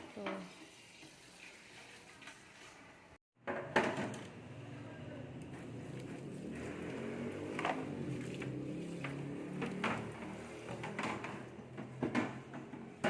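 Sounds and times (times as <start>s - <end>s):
sharp knocks and clatters: 3.4s - 4.4s, 7.4s - 13.0s.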